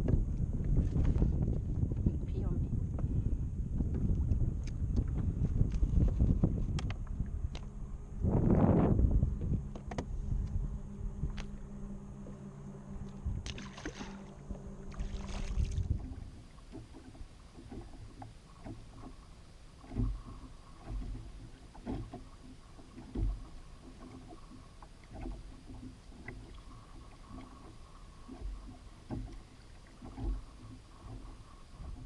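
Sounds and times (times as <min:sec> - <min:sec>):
wind noise: 0:00.0 - 0:11.7, 0:13.0 - 0:19.2
low hum: 0:00.0 - 0:32.0
water lapping against kayak hull: 0:00.0 - 0:32.0.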